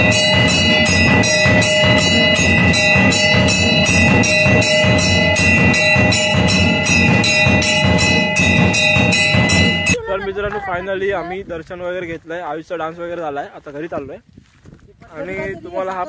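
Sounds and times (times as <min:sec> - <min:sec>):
drum beat: 0:00.0 - 0:10.0
held ringing tones: 0:00.0 - 0:10.0
high metallic percussion: 0:00.0 - 0:10.0.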